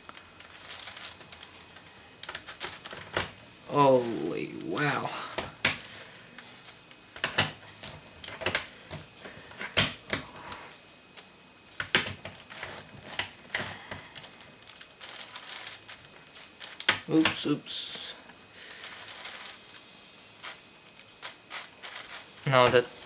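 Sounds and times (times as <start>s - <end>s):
puzzle cube plastic clicks: 11.8s - 17.4s.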